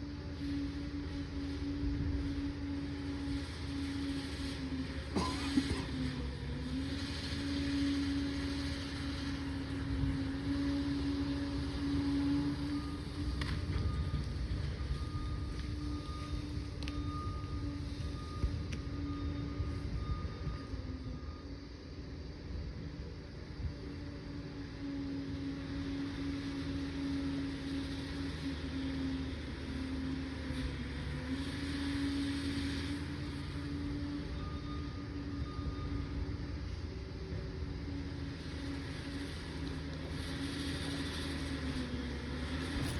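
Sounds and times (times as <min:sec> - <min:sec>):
diesel engine running: 0:00.0 - 0:42.9
hiss: 0:02.2 - 0:09.8, 0:38.4 - 0:42.9.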